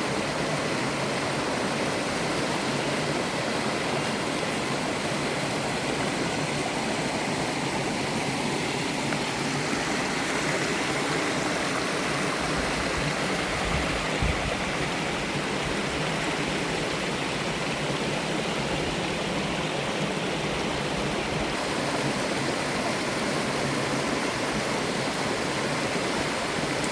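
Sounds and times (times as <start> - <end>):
waterfall and stream rushing: 0.0 - 26.9.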